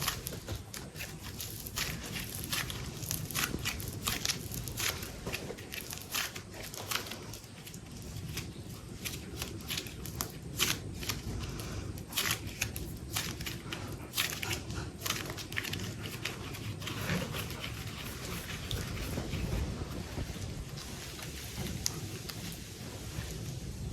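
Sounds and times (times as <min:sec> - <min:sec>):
low rumble: 0:06.7 - 0:23.9.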